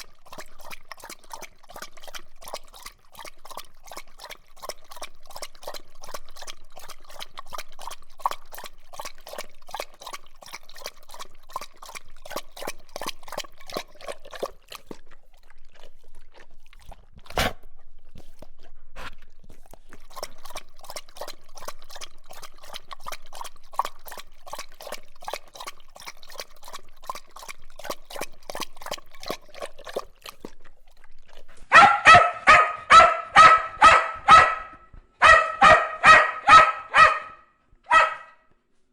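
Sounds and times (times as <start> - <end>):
dog lapping water: 0.0 - 38.5
dog barking: 31.7 - 38.5.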